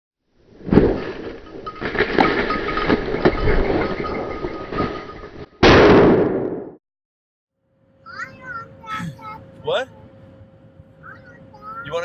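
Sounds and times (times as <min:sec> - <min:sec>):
shotgun blast: 0:05.6 - 0:06.7.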